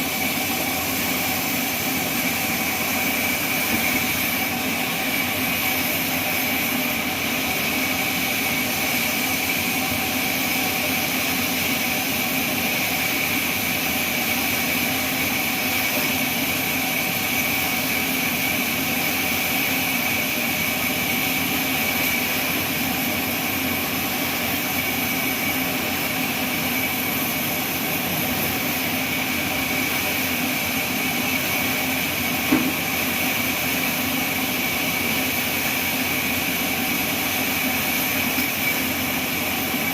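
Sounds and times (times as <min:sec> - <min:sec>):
short knock: 0:32.5 - 0:32.8.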